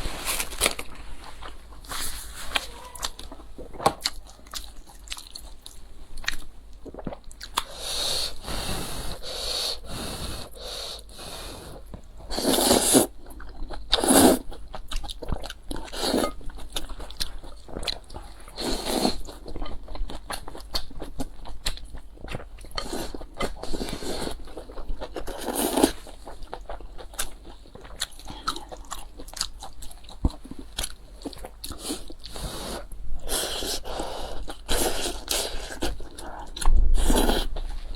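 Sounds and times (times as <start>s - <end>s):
chewing with wet mouth clicks: 3.0s - 7.7s.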